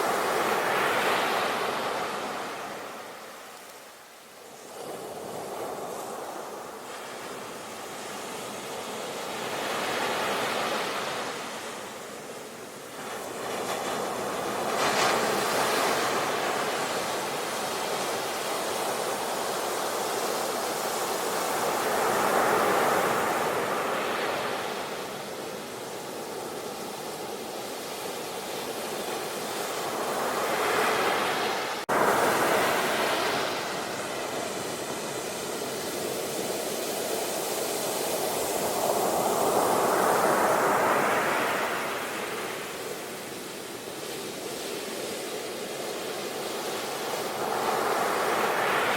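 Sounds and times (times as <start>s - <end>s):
waves breaking on shore: 0.0s - 48.9s.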